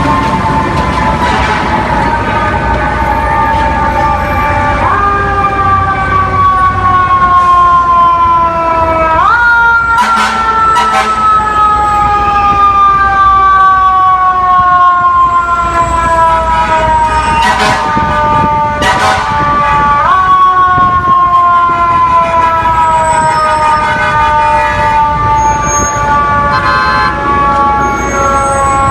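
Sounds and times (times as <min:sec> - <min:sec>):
sharp horn blasts: 0:26.5 - 0:27.2.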